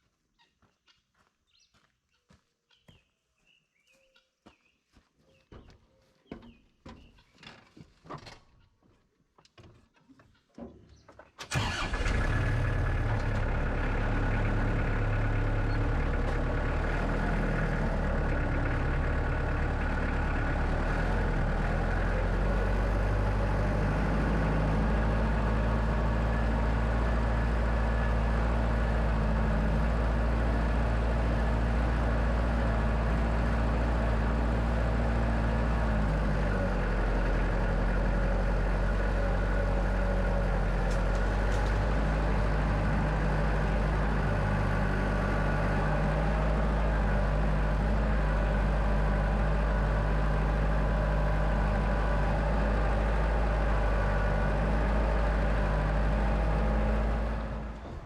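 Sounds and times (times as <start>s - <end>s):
knocks and steps: 4.5s - 11.4s
engine idling: 11.4s - 58.0s.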